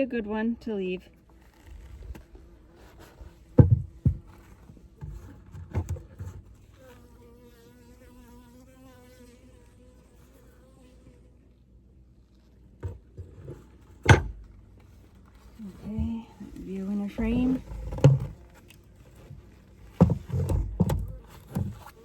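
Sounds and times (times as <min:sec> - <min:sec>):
honeybee buzzing: 0:05.9 - 0:11.5, 0:15.6 - 0:22.0.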